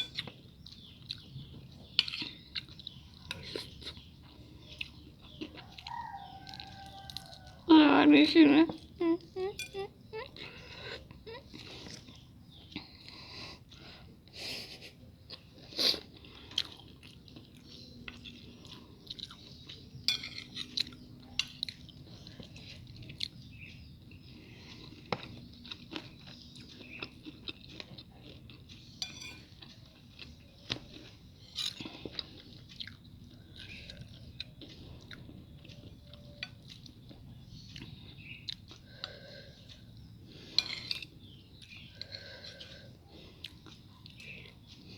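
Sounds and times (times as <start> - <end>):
dishes clinking: 0.0 - 0.3, 20.1 - 20.7, 29.0 - 29.6
person chewing crunchy food: 0.0 - 7.7, 9.5 - 14.2, 15.1 - 44.9.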